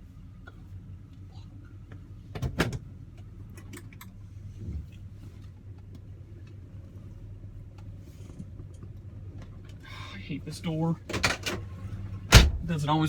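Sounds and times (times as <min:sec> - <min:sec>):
car door shutting with clunk: 0:12.3 - 0:12.7.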